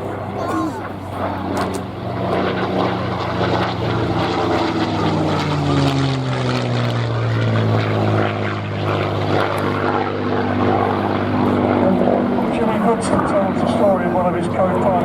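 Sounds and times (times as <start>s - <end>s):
propeller aircraft engines flying past: 0.0s - 15.0s.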